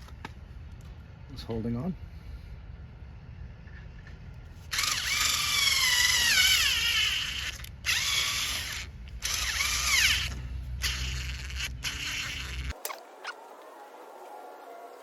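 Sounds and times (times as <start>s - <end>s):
power drill motor whine: 4.7s - 12.8s.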